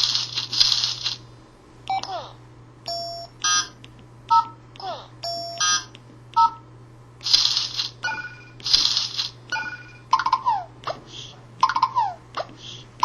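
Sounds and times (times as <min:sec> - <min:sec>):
electronic beeps and chimes: 0:09.5 - 0:10.3.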